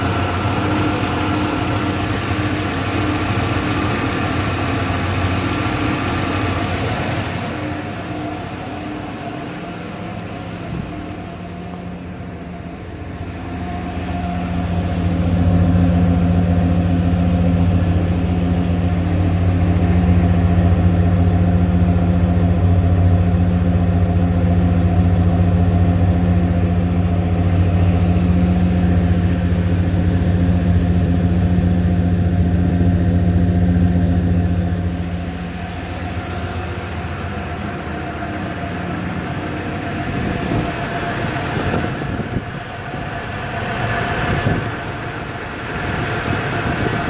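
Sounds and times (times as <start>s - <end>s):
engine ticking: 0.0s - 47.0s
truck engine running: 0.0s - 47.0s.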